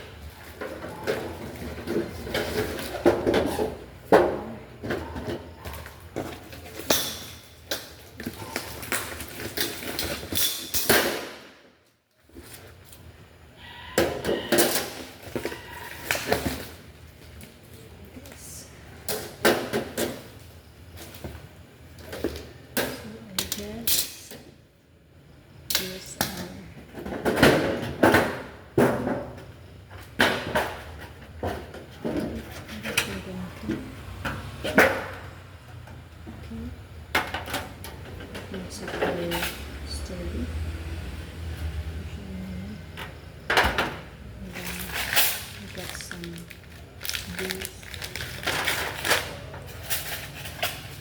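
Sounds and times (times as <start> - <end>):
wrapping rustling: 44.5 - 51.0.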